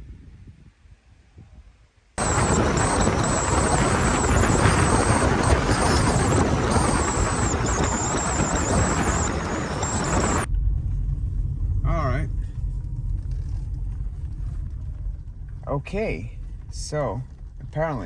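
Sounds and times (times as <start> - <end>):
car road and wind noise: 2.2 - 10.5
thin high whine: 2.2 - 10.5.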